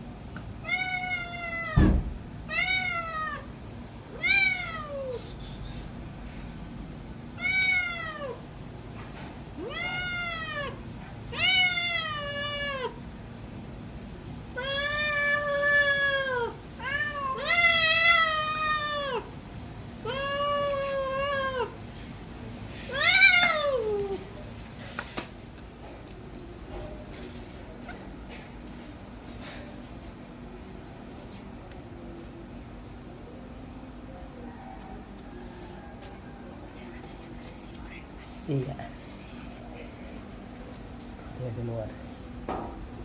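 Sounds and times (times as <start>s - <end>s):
cat meowing: 0.6s - 1.9s, 2.5s - 3.5s, 4.1s - 5.2s, 7.4s - 8.4s, 9.6s - 13.0s.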